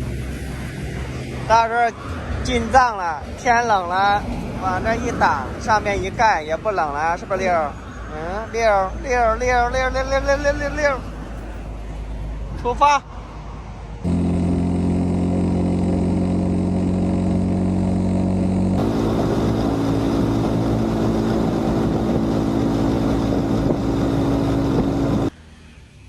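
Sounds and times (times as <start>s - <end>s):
road and wind noise: 0.0s - 26.0s
motorcycle engine running: 14.1s - 25.3s.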